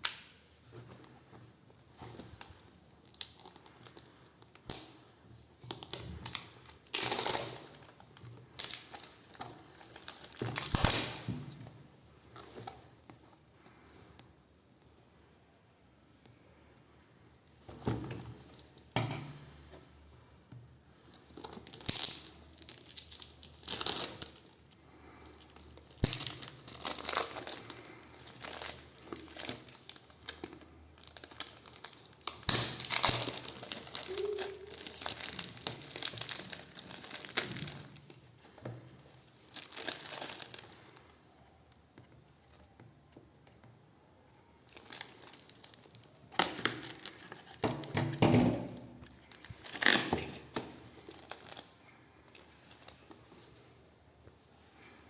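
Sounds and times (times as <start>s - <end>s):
packaging crinkling and tearing: 2.0s - 11.6s, 21.0s - 41.2s, 44.6s - 53.6s.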